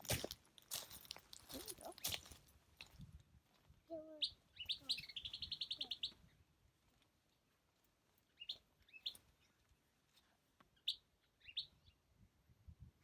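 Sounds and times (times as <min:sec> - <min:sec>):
songbird chirps and trill: 0:03.9 - 0:06.5, 0:08.1 - 0:12.2.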